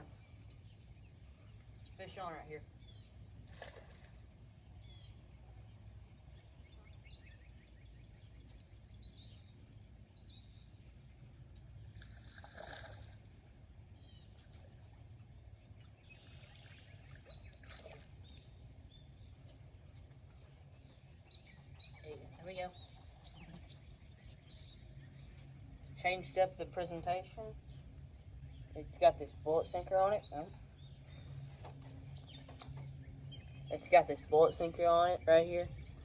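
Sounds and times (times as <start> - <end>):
small birds chirping: 0.0 - 36.0
steady low rumble: 18.2 - 36.0.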